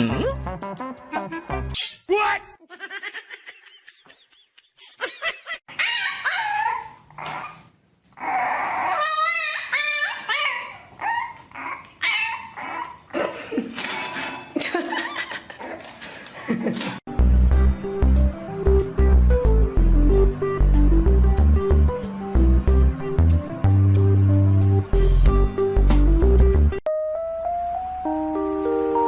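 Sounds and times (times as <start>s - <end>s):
pet animal wavering cries: 5.7s - 13.1s.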